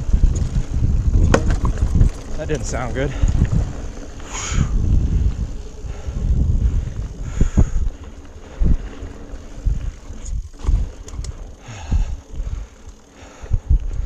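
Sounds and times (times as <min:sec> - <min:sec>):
wind buffeting microphone: 0:00.0 - 0:14.0
bike knocking over rocks: 0:00.2 - 0:04.2, 0:09.0 - 0:11.6.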